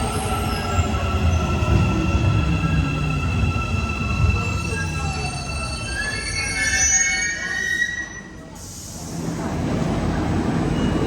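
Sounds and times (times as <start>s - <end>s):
train squeal: 0.0s - 8.5s, 10.5s - 11.0s
low train rumble: 0.0s - 11.0s
hiss: 8.6s - 9.4s.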